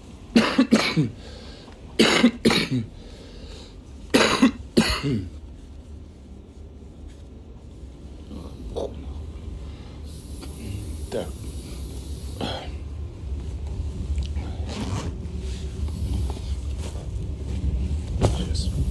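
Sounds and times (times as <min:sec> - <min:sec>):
man coughing: 0:00.3 - 0:01.2, 0:02.0 - 0:03.0, 0:04.1 - 0:05.4.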